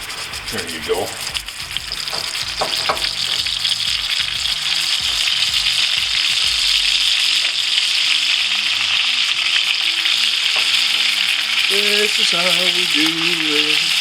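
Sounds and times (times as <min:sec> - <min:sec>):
burger patty sizzling in a pan: 0:00.0 - 0:14.0.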